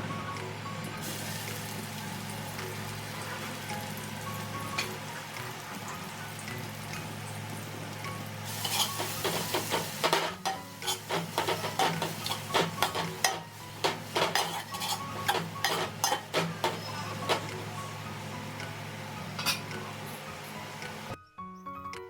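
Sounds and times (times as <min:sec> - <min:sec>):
hot oil sizzling: 0:01.0 - 0:21.2
spatula scraping a pan: 0:08.5 - 0:17.5.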